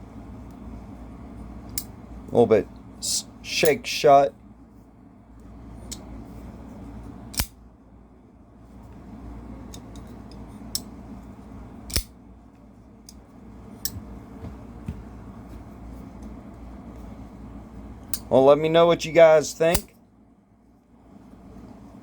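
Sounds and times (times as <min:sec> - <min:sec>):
low steady hum: 0:00.0 - 0:22.0
folding knife clicking: 0:07.3 - 0:07.6, 0:11.9 - 0:12.1.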